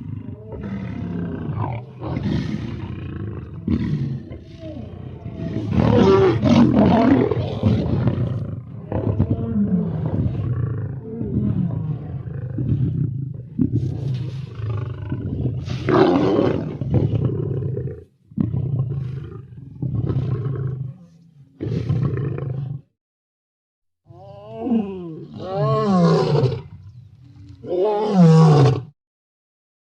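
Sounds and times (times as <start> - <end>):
lion moaning calls: 0.0 - 12.5
lion growling: 0.0 - 22.9, 24.1 - 28.9.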